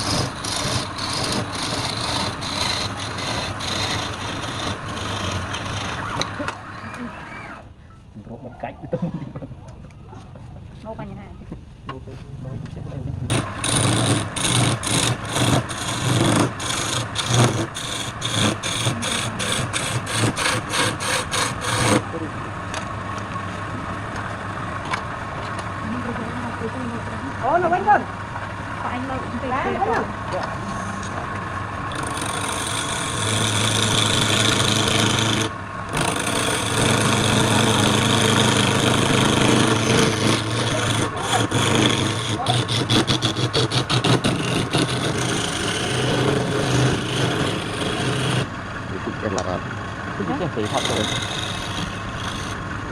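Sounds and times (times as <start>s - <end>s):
hand tool rasping on wood: 0.0s - 6.4s, 13.3s - 22.0s, 31.9s - 48.5s, 50.6s - 52.6s
lathe motor hum: 0.0s - 7.7s, 13.3s - 25.2s, 25.8s - 52.9s.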